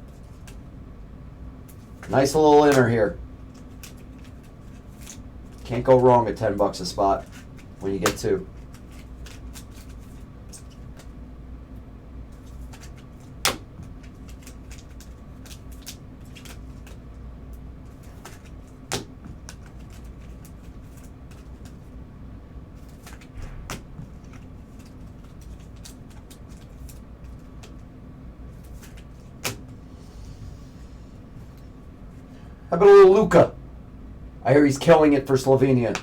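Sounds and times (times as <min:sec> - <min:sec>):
cards tapping and rustling: 0:01.7 - 0:11.2, 0:12.3 - 0:17.2, 0:17.8 - 0:22.0, 0:22.8 - 0:27.9, 0:28.5 - 0:29.8.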